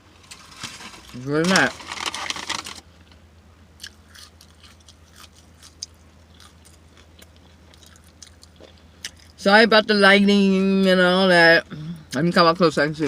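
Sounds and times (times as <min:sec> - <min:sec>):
person chewing: 0:03.8 - 0:09.4.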